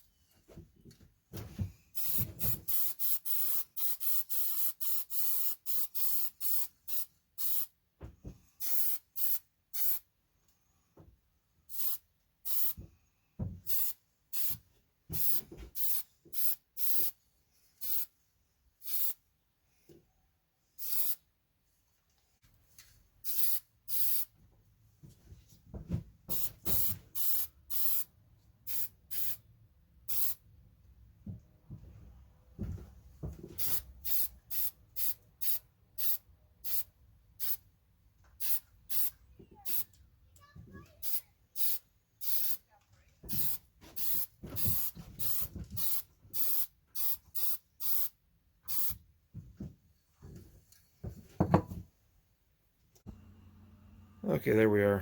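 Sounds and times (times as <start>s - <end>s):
spray paint can hissing: 2.0s - 7.7s, 8.6s - 10.0s, 11.7s - 12.8s, 13.7s - 14.6s, 15.2s - 17.1s, 17.8s - 18.1s, 18.8s - 19.2s, 20.8s - 21.2s, 23.2s - 24.3s, 26.3s - 28.1s, 28.7s - 29.4s, 30.1s - 30.4s, 33.6s - 37.6s, 38.4s - 39.9s, 41.0s - 42.6s, 43.3s - 48.1s, 48.7s - 49.0s.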